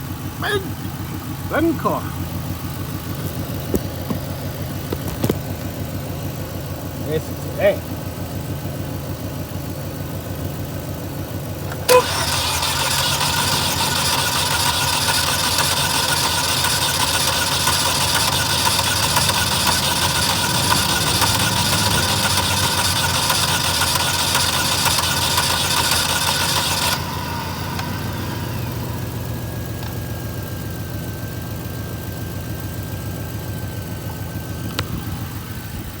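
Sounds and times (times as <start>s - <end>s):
starter motor cranking engine: 0.0s - 36.0s
starter click: 16.1s - 27.1s.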